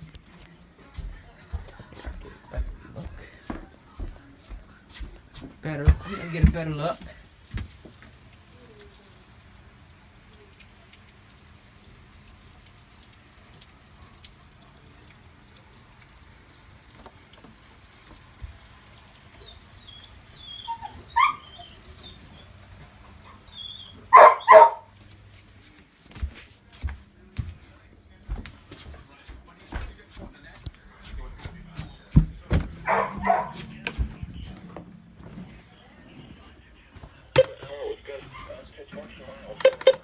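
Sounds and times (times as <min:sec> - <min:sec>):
dog whining: 0:19.4 - 0:22.6, 0:23.2 - 0:24.8, 0:32.8 - 0:33.6
dog yipping: 0:19.4 - 0:22.6, 0:23.2 - 0:24.9, 0:32.7 - 0:33.8
dog barking: 0:20.8 - 0:21.6, 0:24.0 - 0:24.9, 0:32.6 - 0:33.9.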